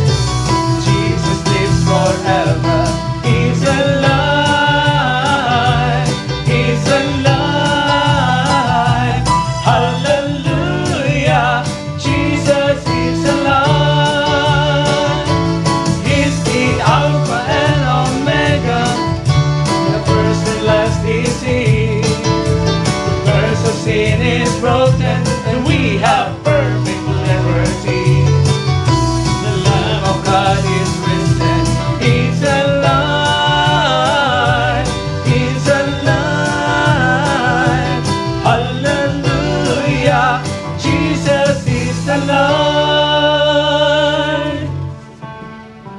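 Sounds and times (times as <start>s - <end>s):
gospel song with band: 0.0s - 45.9s.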